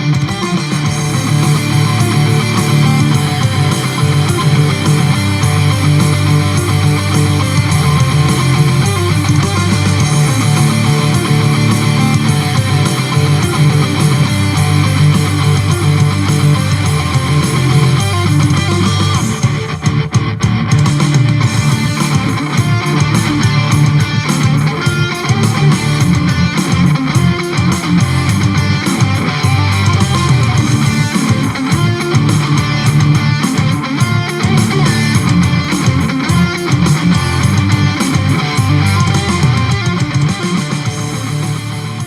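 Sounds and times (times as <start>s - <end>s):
bass line: 0.0s - 42.0s
electric guitar music: 0.0s - 42.0s.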